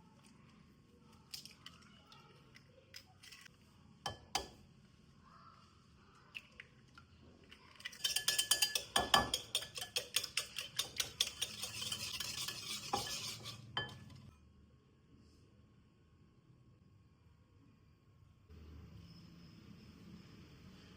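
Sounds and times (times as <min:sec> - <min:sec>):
utensil beating in a bowl: 0:08.0 - 0:14.0.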